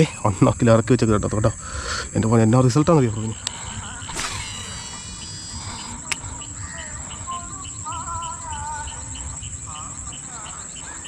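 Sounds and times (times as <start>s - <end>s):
insects chirring: 0.0s - 11.0s
short warbling calls: 3.8s - 6.2s
sharp click with ring: 4.1s - 6.2s.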